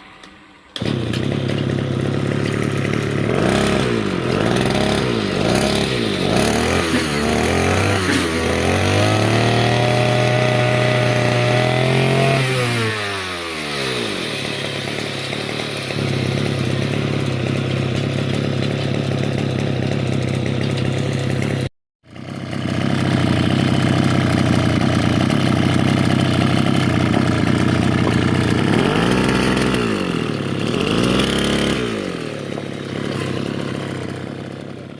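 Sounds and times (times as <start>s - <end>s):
small engine revving and idling: 0.8s - 34.9s.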